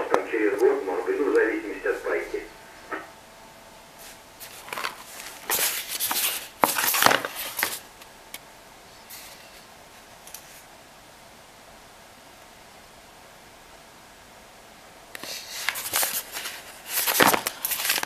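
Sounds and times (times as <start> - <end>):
steady low hiss: 0.0 - 18.0
scraping and rustling: 4.0 - 7.9, 15.2 - 18.0.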